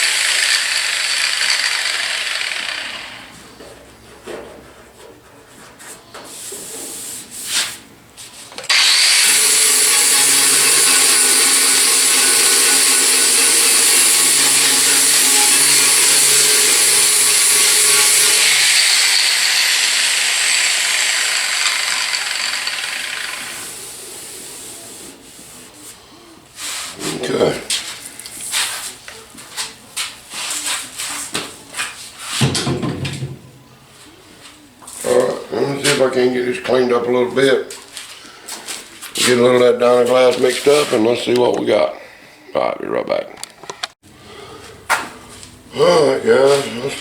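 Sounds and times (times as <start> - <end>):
power grinder grinding metal: 0.0 - 3.3, 8.7 - 23.9.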